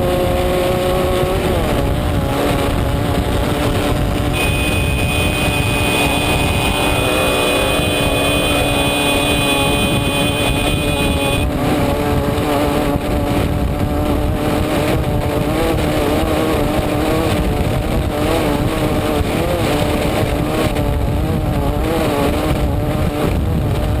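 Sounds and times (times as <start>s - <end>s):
race car engine revving: 0.0s - 22.5s
wind and terrain rumble: 0.0s - 24.0s
high-pitched steady tone: 4.3s - 11.5s.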